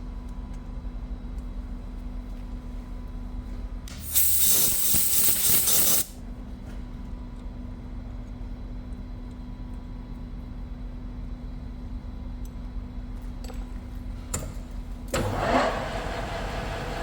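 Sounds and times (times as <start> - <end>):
compressed air blast hissing: 3.9 - 6.2
lathe humming: 15.2 - 17.0.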